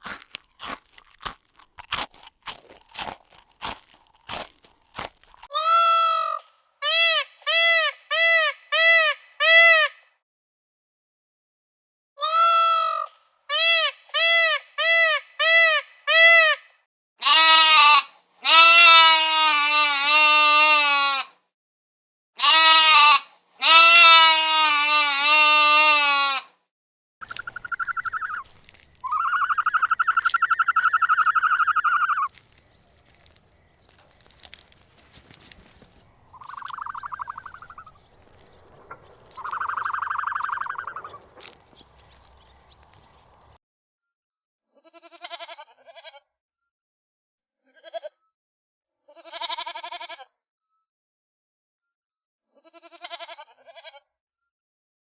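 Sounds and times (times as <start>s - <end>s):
wavering bleats: 17.2s - 21.2s, 22.4s - 26.4s, 36.3s - 43.4s.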